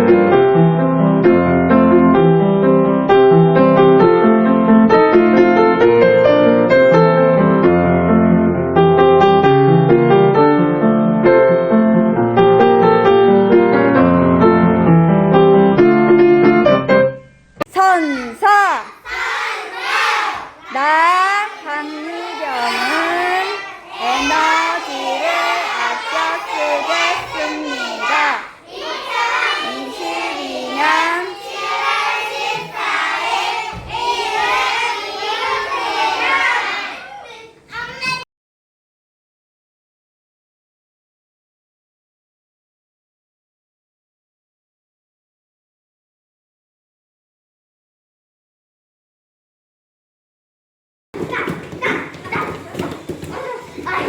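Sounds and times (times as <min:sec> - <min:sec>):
piano music: 0:00.0 - 0:17.2
young children singing: 0:17.8 - 0:38.2.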